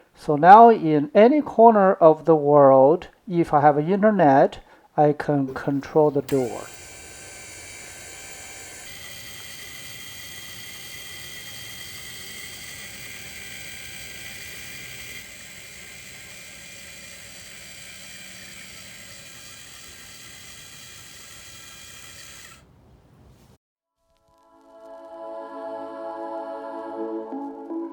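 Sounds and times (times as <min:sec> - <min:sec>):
small electric motor whining: 0:05.5 - 0:22.8.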